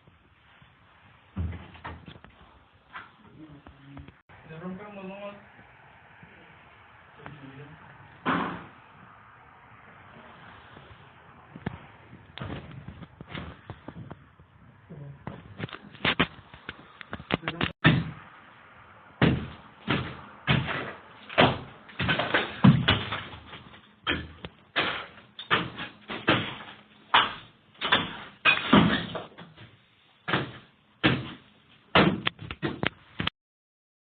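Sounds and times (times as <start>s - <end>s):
sharp knocks and thumps: 1.3s - 3.1s, 8.2s - 8.8s, 11.5s - 14.2s, 15.2s - 18.2s, 19.2s - 29.7s, 30.3s - 33.3s.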